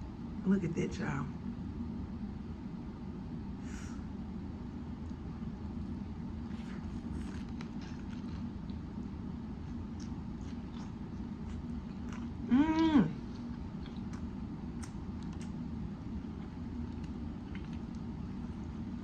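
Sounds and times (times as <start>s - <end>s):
steady low hum: 0.0s - 19.0s
wet chewing mouth clicks: 9.9s - 15.6s, 16.4s - 18.1s.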